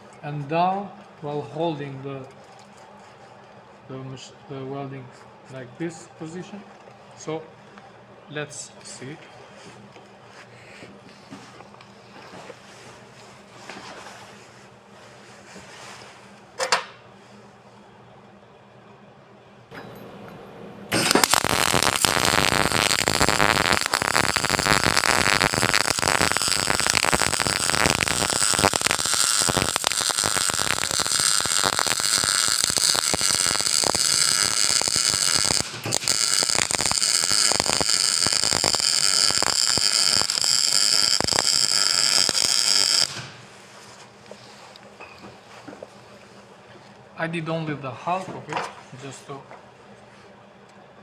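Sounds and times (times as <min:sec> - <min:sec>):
welding arc crackling: 0:20.9 - 0:43.5.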